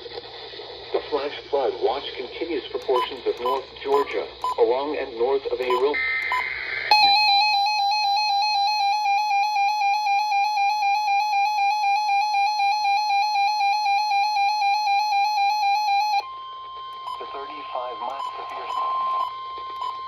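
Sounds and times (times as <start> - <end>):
shrill pulsing alarm tone: 5.7 - 20.0.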